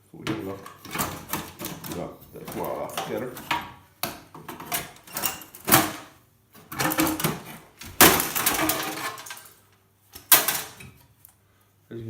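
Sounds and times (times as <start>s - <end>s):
clattering and scraping of metal parts: 0.2s - 11.2s.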